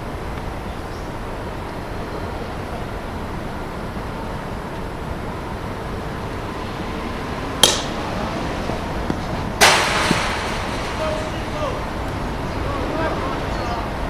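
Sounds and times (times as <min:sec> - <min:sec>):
steady background hum: 0:00.0 - 0:14.0
metal bat striking ball: 0:07.6 - 0:08.0, 0:09.6 - 0:11.5.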